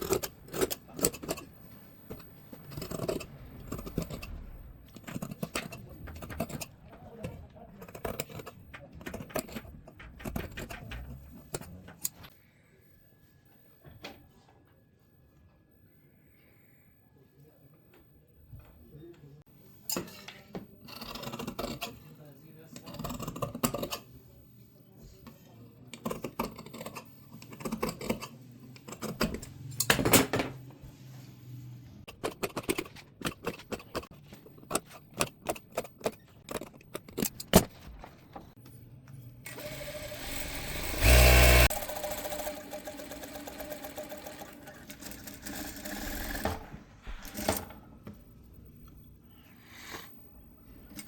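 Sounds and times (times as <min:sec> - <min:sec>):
handling clicks and knocks: 0:04.9 - 0:12.2, 0:32.1 - 0:38.7
electric sewing machine running: 0:39.5 - 0:46.6.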